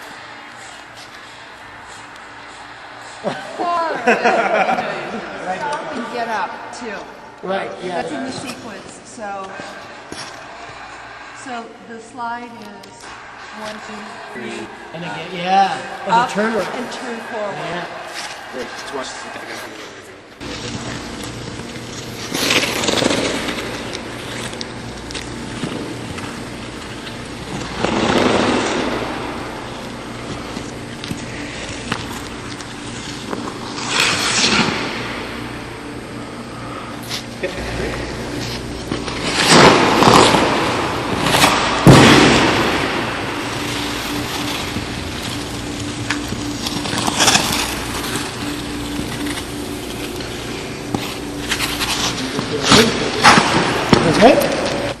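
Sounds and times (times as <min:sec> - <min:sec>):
skate blades scraping ice: 0:00.0 - 0:03.5, 0:16.0 - 0:19.8, 0:20.4 - 0:55.0
steady low hum: 0:00.0 - 0:55.0.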